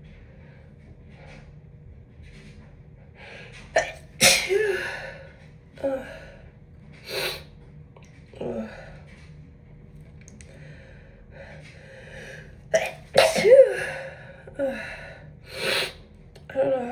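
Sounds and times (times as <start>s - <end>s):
woman sneezing: 3.8s - 5.0s, 12.8s - 14.0s.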